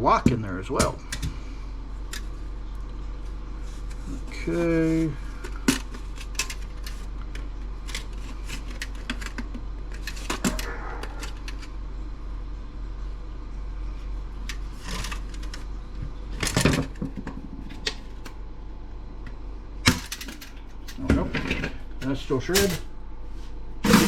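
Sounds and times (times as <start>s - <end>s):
low hum: 0.0s - 24.0s
small parts clicking and clattering: 5.4s - 11.7s.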